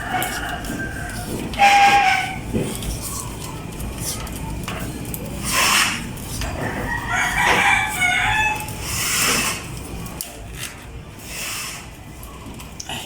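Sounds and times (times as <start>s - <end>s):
rooster crowing: 0.0s - 2.4s, 6.6s - 8.8s.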